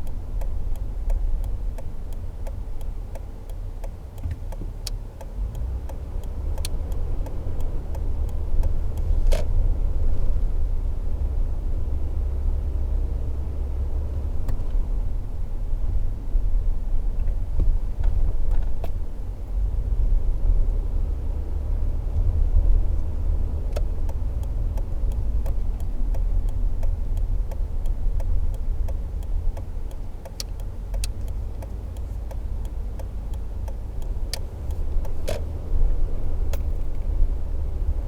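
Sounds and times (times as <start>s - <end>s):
engine and road rumble: 0.0s - 38.0s
clicks and rattles in cab: 23.7s - 35.5s.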